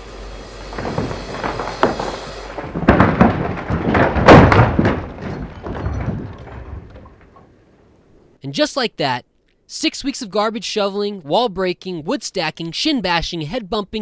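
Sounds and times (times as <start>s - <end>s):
wall collapsing with crashing thuds: 0.7s - 8.1s
falling timber cracking: 0.7s - 8.2s.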